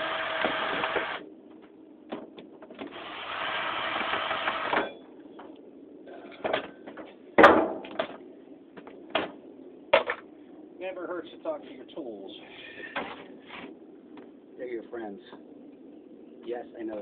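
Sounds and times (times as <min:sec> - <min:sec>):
power drill running: 0:00.0 - 0:01.2, 0:02.9 - 0:04.8.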